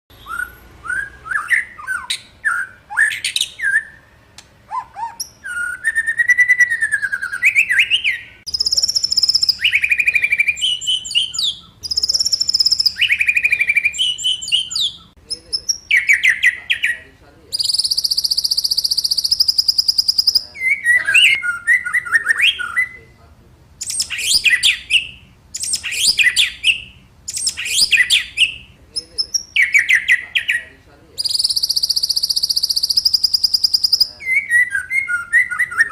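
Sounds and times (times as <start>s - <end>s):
songbird whistling and trilling: 0.1s - 4.1s, 4.7s - 23.2s, 23.8s - 35.9s
buzzy rattling bird call: 17.6s - 21.4s.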